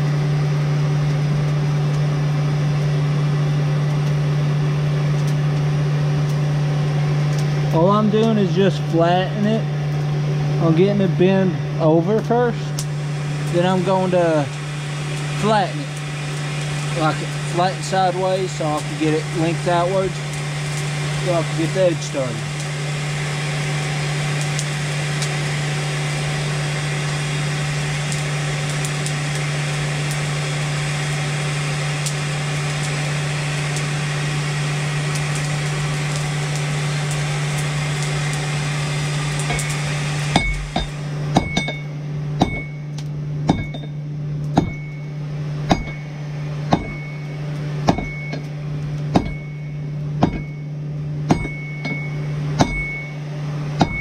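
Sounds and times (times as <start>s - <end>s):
low hum: 0.0s - 54.0s
hammer blows on hot steel: 39.3s - 42.9s, 45.7s - 46.1s, 46.7s - 48.5s, 49.1s - 50.6s, 51.3s - 53.2s, 53.8s - 54.0s.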